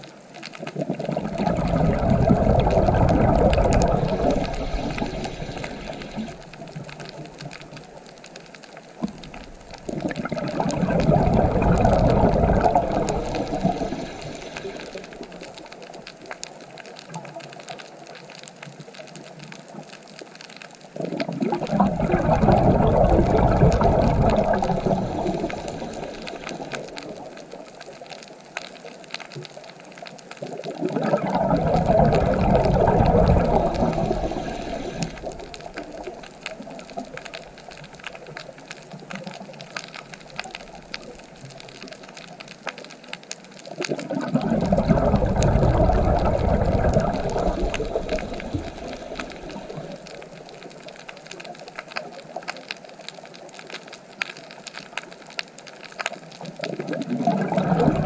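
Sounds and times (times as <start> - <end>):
ocean waves surging: 1.0 - 7.3, 9.8 - 15.6, 21.4 - 27.6, 30.8 - 37.6, 43.9 - 50.4, 57.1 - 58.0.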